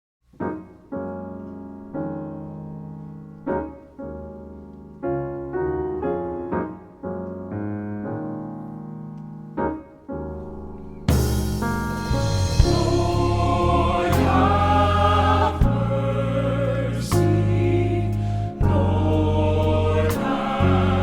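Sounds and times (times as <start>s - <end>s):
piano chords: 0.3s - 21.0s.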